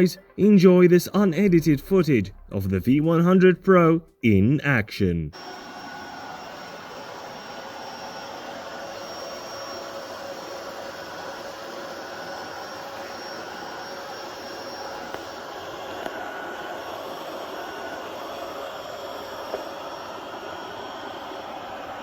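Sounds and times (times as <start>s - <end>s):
robot vacuum whirring: 5.4s - 22.0s.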